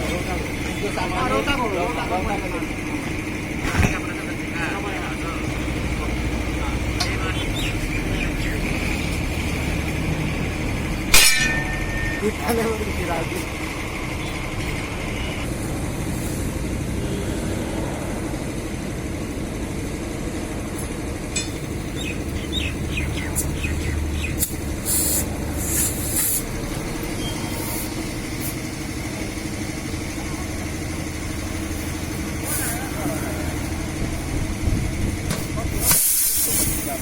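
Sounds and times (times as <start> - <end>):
motor hum: 0.0 - 35.8
short air hisses: 24.4 - 26.6, 32.4 - 32.9, 35.8 - 36.9.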